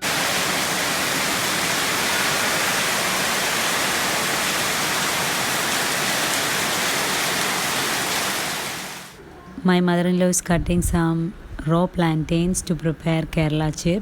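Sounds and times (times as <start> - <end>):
heavy rain falling: 0.0 - 9.2.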